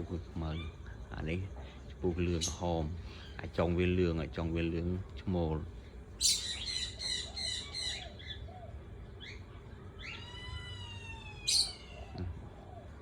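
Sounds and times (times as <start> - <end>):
parrot shrill chirps: 6.2 - 8.4, 10.0 - 12.1
parrot squawk: 6.2 - 9.4, 10.0 - 12.3.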